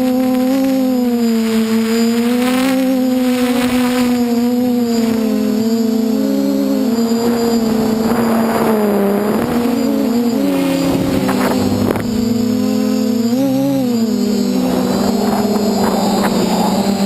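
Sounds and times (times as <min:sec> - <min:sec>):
quadcopter motors buzzing: 0:00.0 - 0:17.0
wind rush on microphone: 0:06.2 - 0:17.0.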